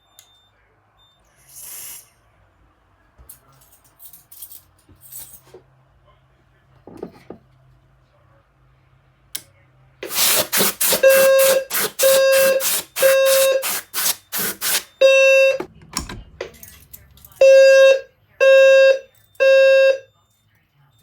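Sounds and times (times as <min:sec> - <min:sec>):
fire alarm horn pulsing buzz: 0:10.0 - 0:15.7, 0:17.4 - 0:20.4
low buzzy alarm tone: 0:11.0 - 0:14.4, 0:17.4 - 0:20.1.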